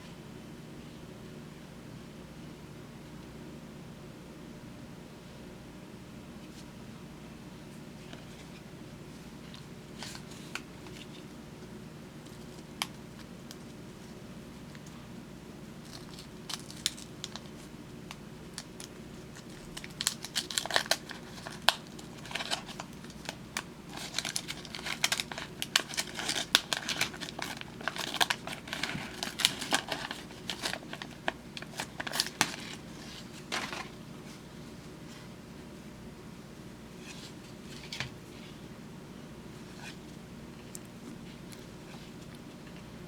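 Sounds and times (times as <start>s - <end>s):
paper wrapper tearing and crinkling: 15.8s - 34.0s.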